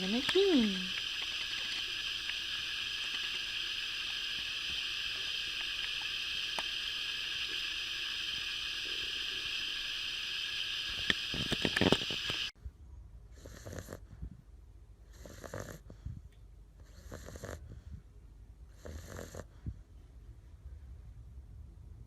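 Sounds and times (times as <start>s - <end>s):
steady high-pitched hiss: 0.0s - 12.6s.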